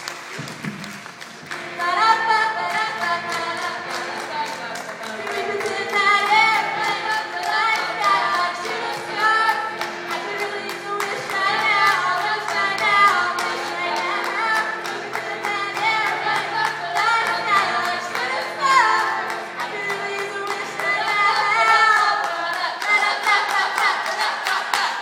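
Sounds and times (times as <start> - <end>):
sharp rhythmic strokes: 1.5 - 25.0
two women singing: 1.6 - 25.0.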